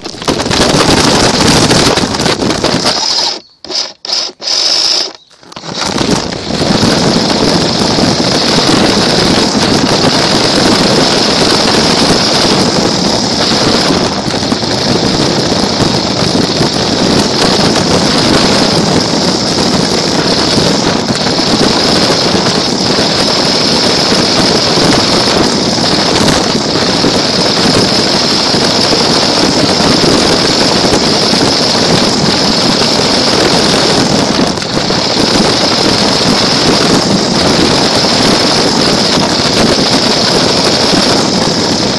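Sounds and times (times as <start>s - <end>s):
toy car motor whining: 0.0s - 12.8s
wheels rumbling: 0.0s - 41.9s.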